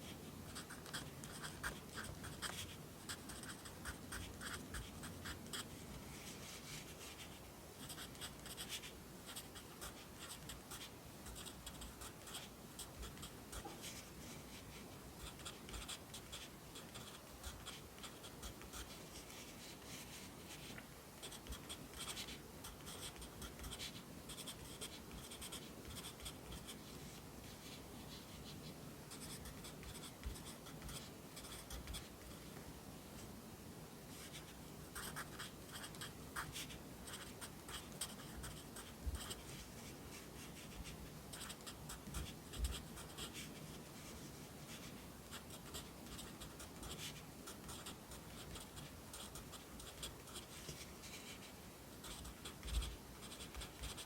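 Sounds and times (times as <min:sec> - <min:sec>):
pencil scratching on paper: 0:00.5 - 0:05.7, 0:06.4 - 0:26.8, 0:40.5 - 0:43.6, 0:44.7 - 0:54.0.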